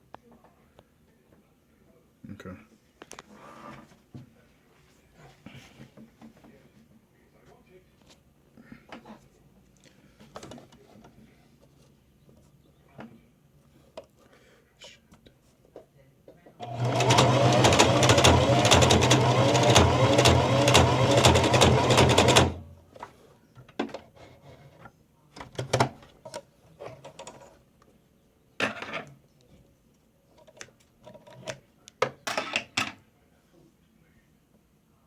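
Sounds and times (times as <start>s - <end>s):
scattered clicks and knocks: 16.6s - 22.7s
sewing machine running: 16.6s - 22.8s.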